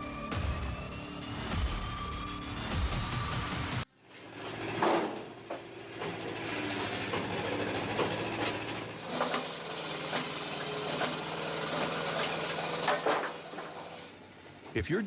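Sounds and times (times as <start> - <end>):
wood-splitting machine humming: 4.4 - 14.6.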